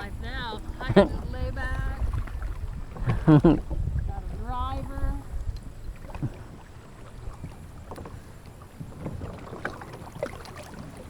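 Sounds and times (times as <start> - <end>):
small water splashes: 0.0 - 11.0
wind rumbling on microphone: 0.0 - 11.0.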